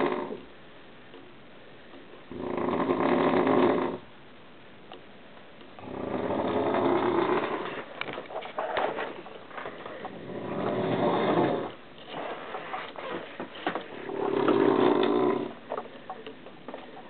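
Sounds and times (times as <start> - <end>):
man snoring loudly: 0.0 - 0.4, 2.3 - 4.0, 5.8 - 7.6, 10.2 - 11.7, 14.4 - 15.5.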